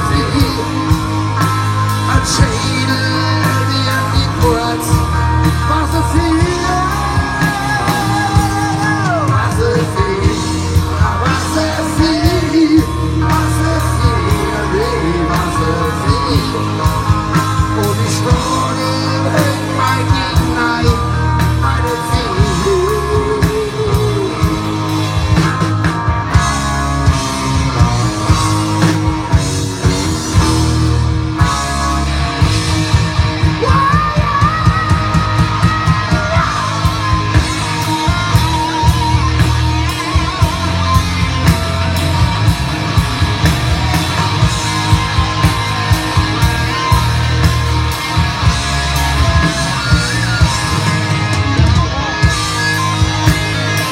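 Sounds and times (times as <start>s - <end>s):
live rock band playing: 0.0s - 53.9s.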